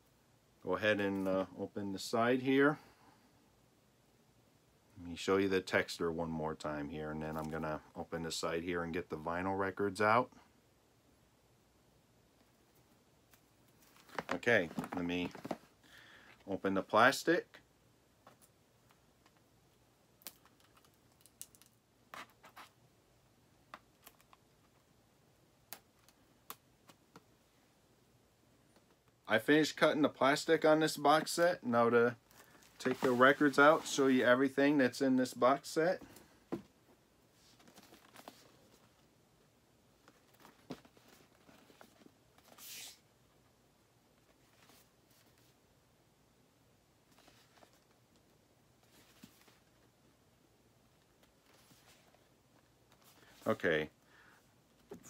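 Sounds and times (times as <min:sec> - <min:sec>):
sliding rustle: 0:32.3 - 0:34.3.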